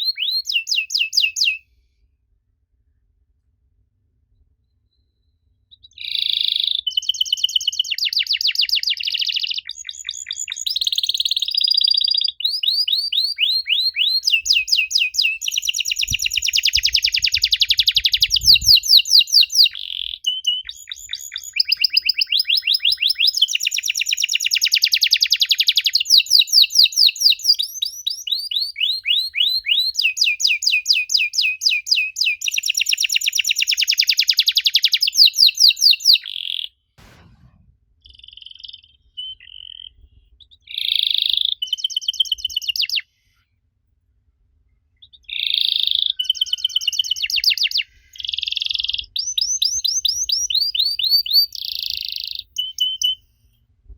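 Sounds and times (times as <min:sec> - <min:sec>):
canary singing trills: 0:00.0 - 0:01.6, 0:05.7 - 0:36.7, 0:38.2 - 0:43.0, 0:45.0 - 0:53.2.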